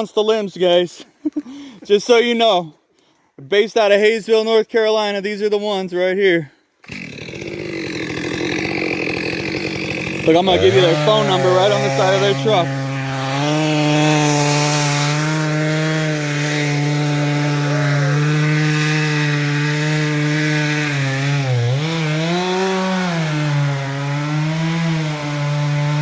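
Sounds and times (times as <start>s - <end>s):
chainsaw cutting wood: 6.8s - 26.0s.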